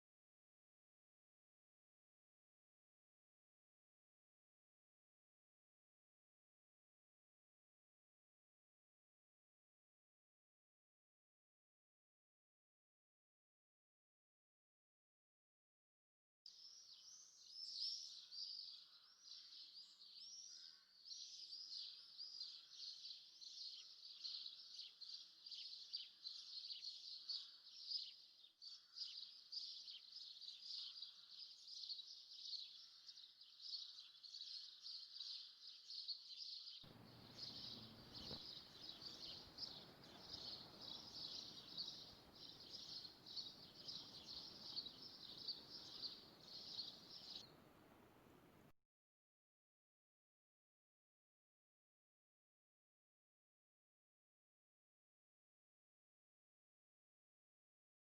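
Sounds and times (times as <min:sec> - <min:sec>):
small birds chirping: 0:16.5 - 0:48.7
faint steady hiss: 0:36.9 - 0:48.7.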